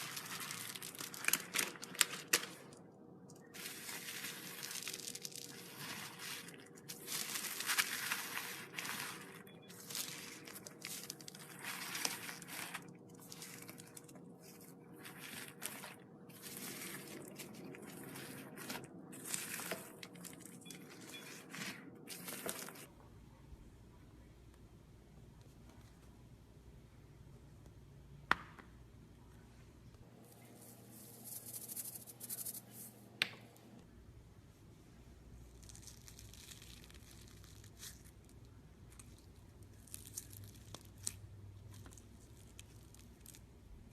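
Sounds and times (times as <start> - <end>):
slime squelching by hand: 3.4 - 23.0.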